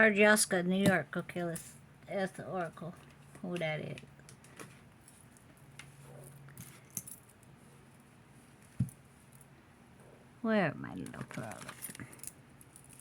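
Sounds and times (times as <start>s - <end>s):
jewelry clinking: 5.0s - 9.5s, 11.3s - 13.0s.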